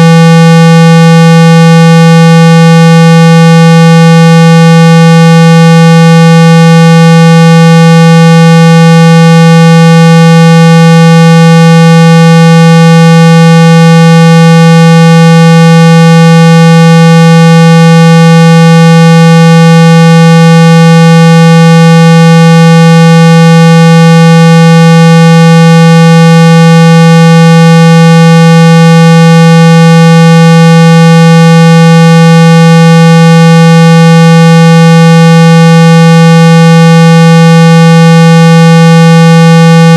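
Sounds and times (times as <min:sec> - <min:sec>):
buzzy electronic tone: 0:38.8 - 0:39.9.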